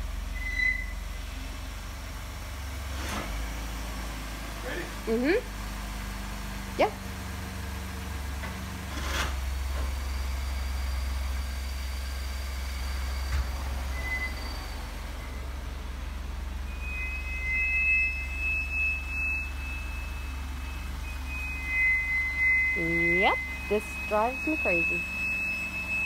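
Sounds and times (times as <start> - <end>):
low rumble of moving vehicle: 0.0 - 26.0
vehicle brakes squealing: 0.2 - 1.4, 7.5 - 26.0.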